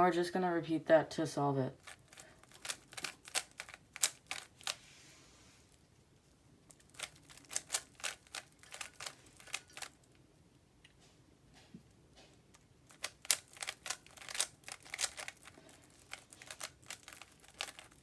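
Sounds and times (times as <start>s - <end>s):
puzzle cube layers clicking: 1.8s - 4.8s, 7.0s - 9.9s, 12.9s - 18.0s.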